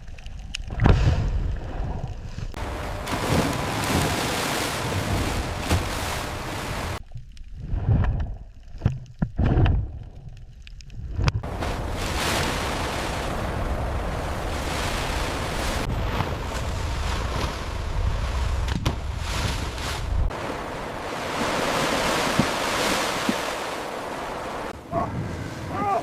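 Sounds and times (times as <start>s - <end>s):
wind: 0.0s - 26.0s
sea waves washing: 1.4s - 7.0s, 11.4s - 26.0s
low rumble: 4.8s - 12.1s.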